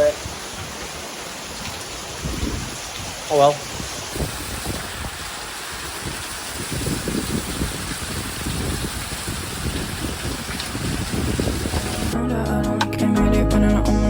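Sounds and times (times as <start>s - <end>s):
rain falling: 0.0s - 12.2s.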